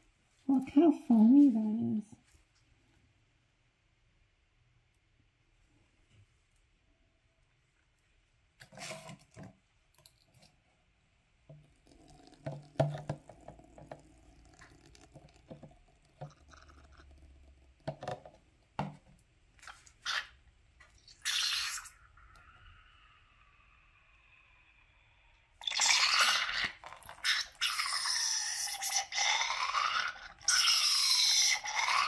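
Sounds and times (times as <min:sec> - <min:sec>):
oil squishing and dripping: 0:11.4 - 0:23.0, 0:25.6 - 0:28.4.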